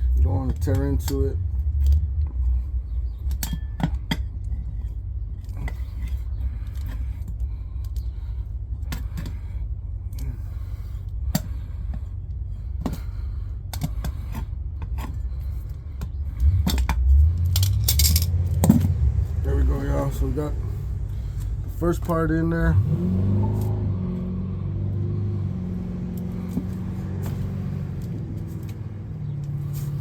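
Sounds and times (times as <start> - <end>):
tire levers clicking on metal rim: 0.0 - 19.1, 25.7 - 30.0
steady low rumble: 0.0 - 30.0.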